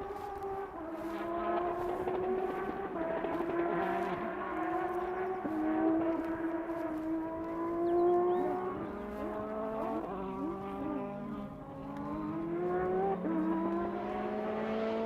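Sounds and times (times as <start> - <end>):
rally car engine revving: 0.0 - 15.0.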